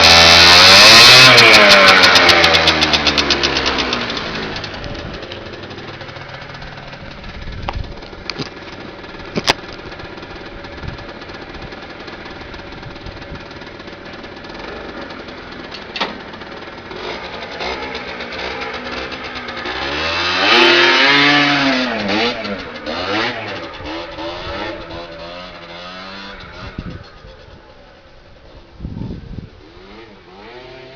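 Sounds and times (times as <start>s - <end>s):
scooter engine idling and revving: 0.0s - 30.9s.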